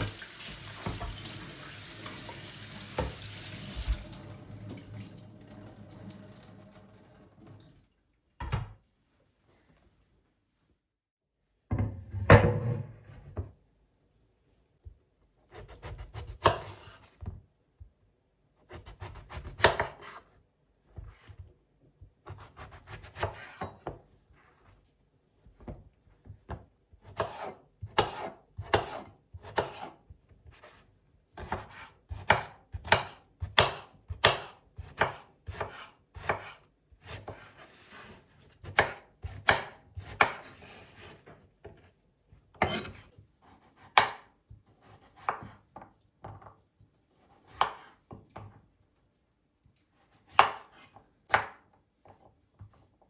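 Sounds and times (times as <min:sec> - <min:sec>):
knife chopping on cutting board: 0:15.5 - 0:17.4, 0:18.7 - 0:20.3, 0:22.2 - 0:24.0, 0:26.5 - 0:30.7, 0:31.4 - 0:41.9, 0:42.6 - 0:46.5, 0:47.1 - 0:48.6, 0:50.0 - 0:52.8.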